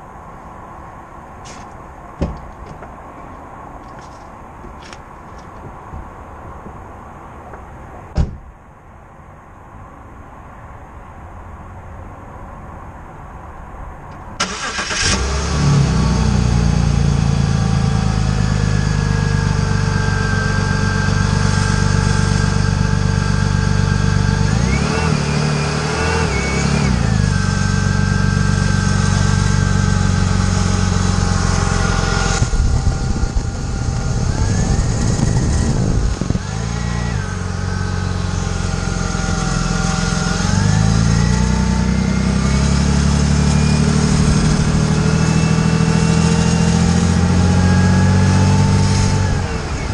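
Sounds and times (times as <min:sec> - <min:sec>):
sharp knock: 0:08.2 - 0:08.5
car engine starting and revving: 0:14.4 - 0:49.9.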